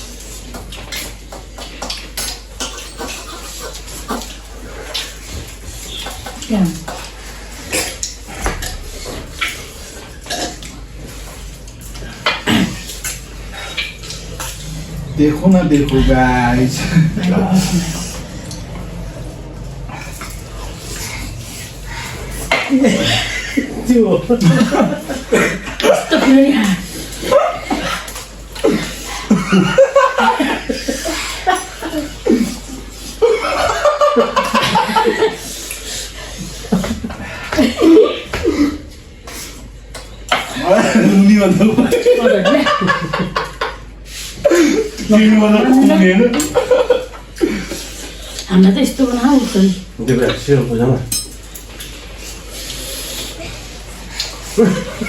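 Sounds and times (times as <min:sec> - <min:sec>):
people laughing: 0:15.7 - 0:19.0, 0:22.3 - 0:39.6, 0:40.3 - 0:48.1, 0:54.3 - 0:55.0.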